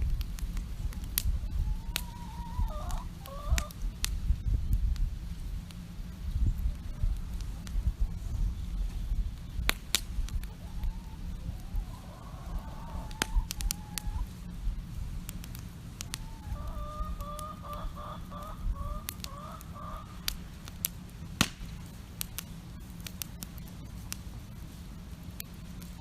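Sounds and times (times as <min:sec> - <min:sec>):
campfire crackling: 0:00.0 - 0:26.0
hens clucking: 0:01.4 - 0:03.8, 0:10.3 - 0:14.4, 0:16.0 - 0:20.3.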